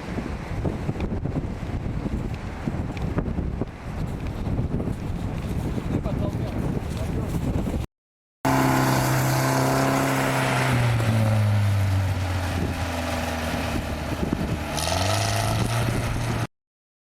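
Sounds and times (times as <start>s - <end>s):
off-road engine revving: 8.4s - 16.5s.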